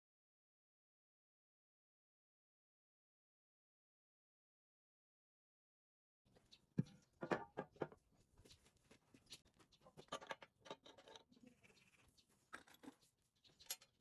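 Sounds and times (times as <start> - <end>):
tools clicking and knocking: 10.0 - 11.3.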